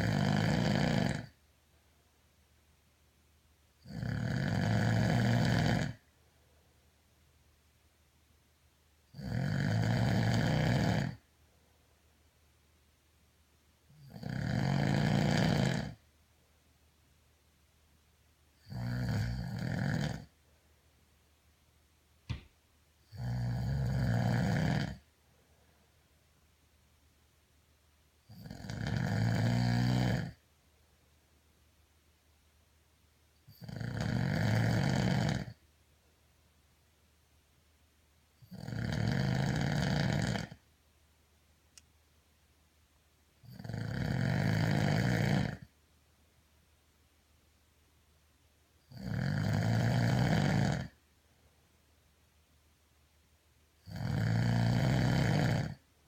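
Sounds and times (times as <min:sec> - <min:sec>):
man snoring: 0:00.0 - 0:01.4, 0:03.8 - 0:06.0, 0:09.1 - 0:11.2, 0:14.0 - 0:16.0, 0:18.6 - 0:20.3, 0:23.1 - 0:25.0, 0:28.3 - 0:30.4, 0:33.5 - 0:35.6, 0:38.4 - 0:40.6, 0:43.5 - 0:45.7, 0:48.9 - 0:51.0, 0:53.9 - 0:55.8
faint click: 0:41.7 - 0:42.0.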